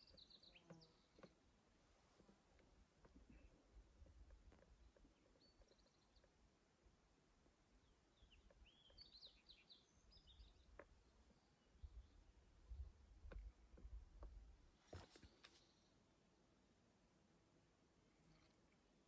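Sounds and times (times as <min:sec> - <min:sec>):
faint bird chirps: 0:00.0 - 0:01.3, 0:04.8 - 0:06.4, 0:07.8 - 0:12.8, 0:18.1 - 0:19.0.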